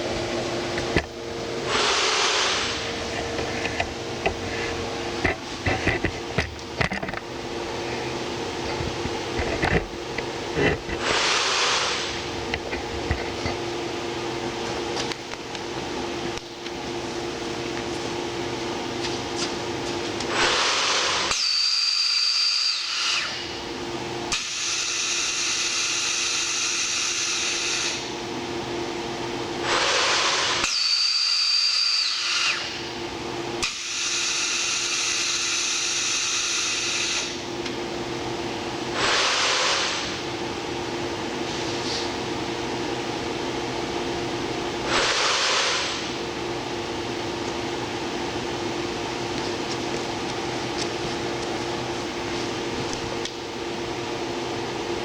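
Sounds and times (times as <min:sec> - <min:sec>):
machine hum: 0:00.0 - 0:22.6, 0:23.2 - 0:55.0
air hissing: 0:01.6 - 0:02.9, 0:11.0 - 0:12.3, 0:39.0 - 0:40.2, 0:44.8 - 0:46.2.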